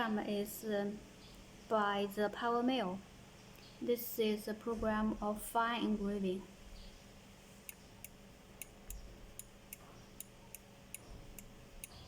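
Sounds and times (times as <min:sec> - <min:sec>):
router faint hum: 0:05.9 - 0:12.0
light sharp ticks: 0:07.7 - 0:12.0.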